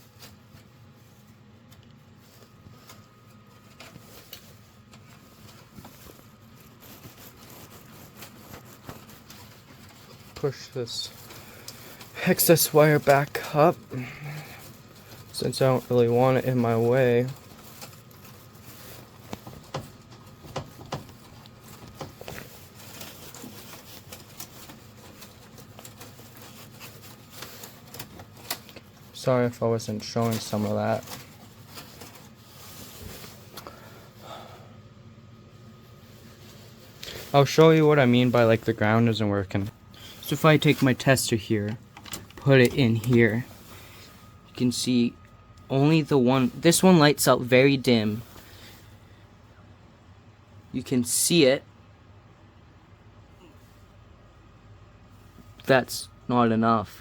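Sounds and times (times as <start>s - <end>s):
light clicks and rustles: 14.5s - 33.8s.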